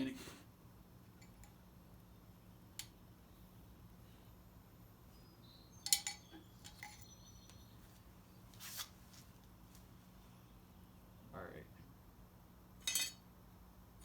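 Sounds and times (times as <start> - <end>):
hand tools clinking on metal fittings: 5.8 - 7.2, 12.8 - 13.2.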